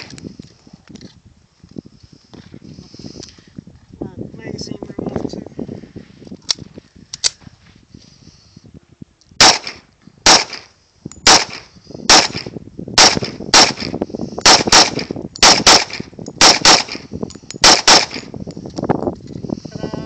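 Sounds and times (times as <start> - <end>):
pistol shots: 9.4 - 10.7, 11.3 - 18.3.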